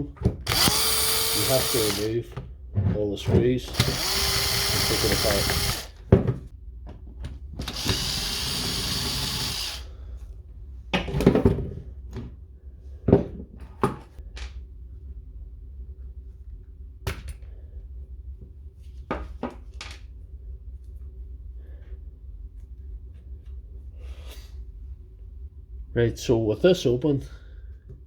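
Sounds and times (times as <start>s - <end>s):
knocks and clicks of parts: 0.0s - 8.8s
power driver whirring: 0.4s - 2.2s, 3.6s - 6.1s, 7.6s - 9.9s.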